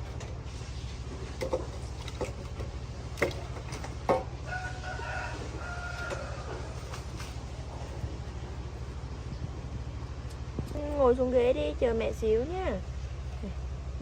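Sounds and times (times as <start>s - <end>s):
steady low hum: 0.0s - 14.0s
rooster crowing: 4.4s - 7.2s.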